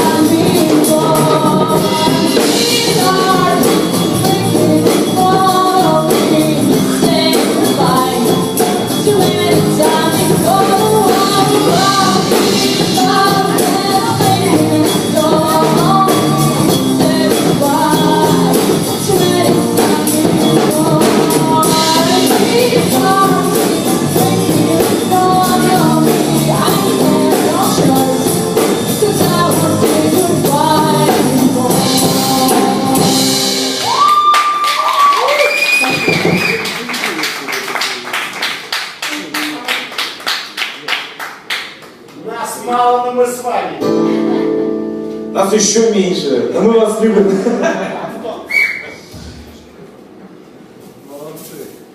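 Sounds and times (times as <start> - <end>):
person singing: 0.0 - 34.2
band playing a song: 0.0 - 36.9.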